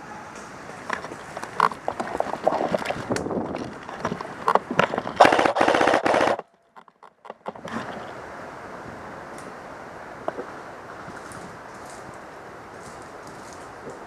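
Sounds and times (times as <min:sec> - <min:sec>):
airsoft gun full-auto burst: 0:05.2 - 0:06.4.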